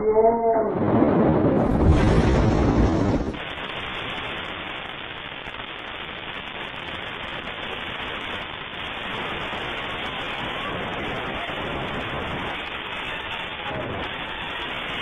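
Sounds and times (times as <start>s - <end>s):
deep rumble of a blast: 0.0s - 3.7s
steady hiss: 1.7s - 15.0s.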